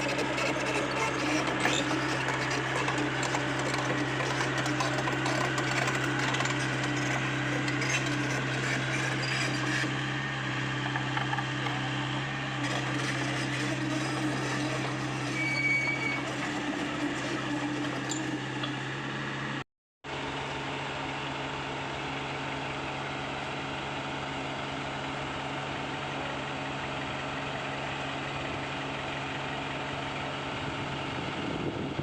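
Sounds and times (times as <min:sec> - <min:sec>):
mechanical grinding and clattering: 0:00.0 - 0:19.0
excavator engine humming: 0:00.0 - 0:19.6.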